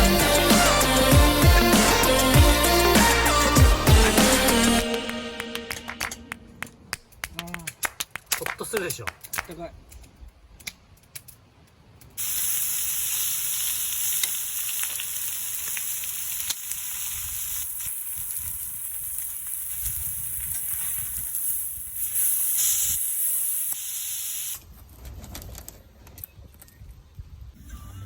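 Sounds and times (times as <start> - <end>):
food sizzling in a frying pan: 12.2 - 24.5.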